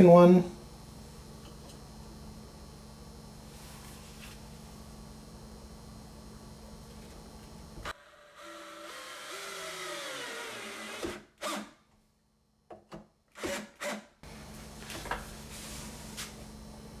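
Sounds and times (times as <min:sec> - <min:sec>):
drill driving screw into wood: 0:07.9 - 0:11.8, 0:13.3 - 0:14.1.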